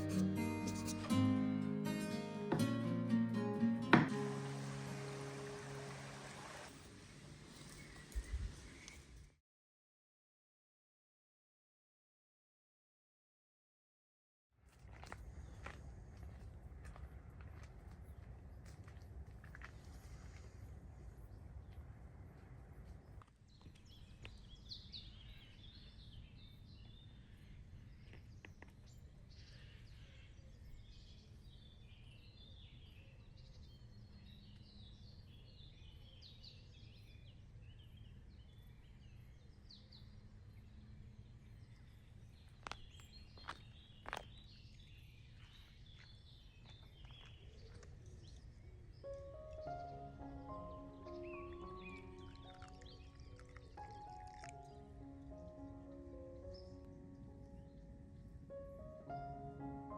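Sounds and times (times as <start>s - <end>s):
small birds chirping: 7.4s - 9.4s, 15.0s - 59.9s.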